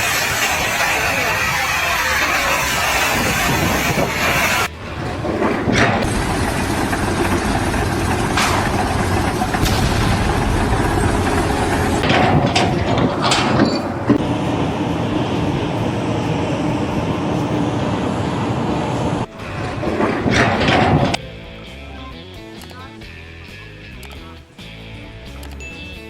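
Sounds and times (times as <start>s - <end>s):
heavy engine running: 0.0s - 22.1s
sharp knocks: 3.1s - 14.3s.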